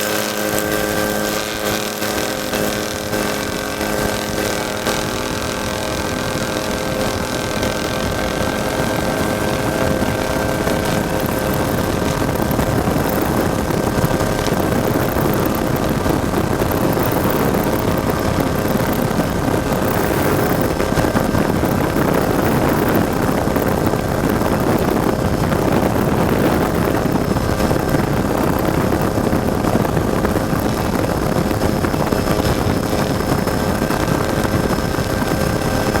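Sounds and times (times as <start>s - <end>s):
truck engine running steadily: 0.0s - 36.0s.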